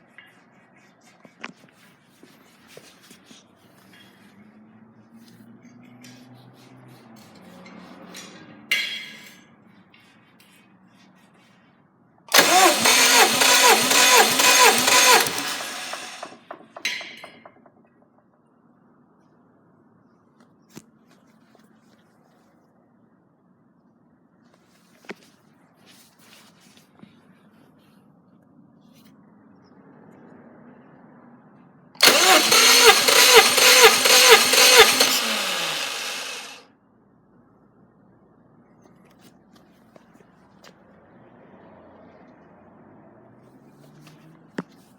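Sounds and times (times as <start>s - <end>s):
engine cranking by starter motor: 12.3s - 17.7s, 32.0s - 36.6s.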